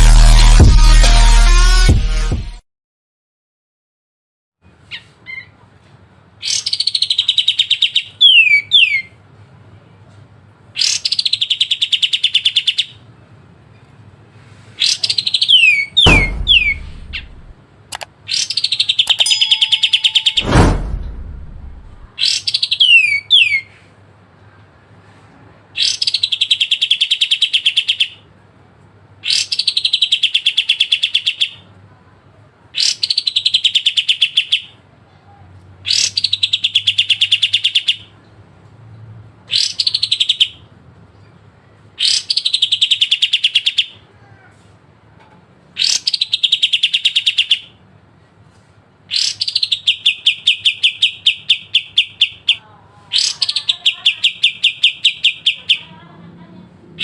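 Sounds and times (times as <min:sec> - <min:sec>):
bird singing trilled phrases: 0:49.1 - 0:55.9.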